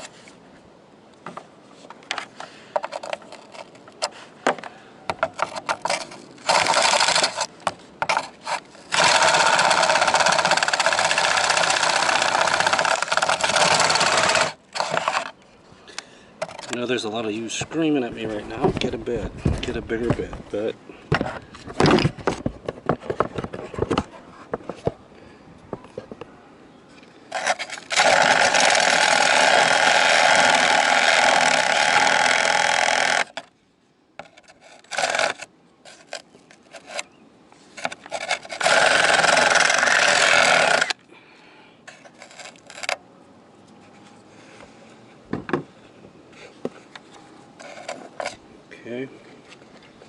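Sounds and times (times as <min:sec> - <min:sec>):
electric drill drilling: 0:08.9 - 0:15.2, 0:27.4 - 0:33.4, 0:38.5 - 0:41.0.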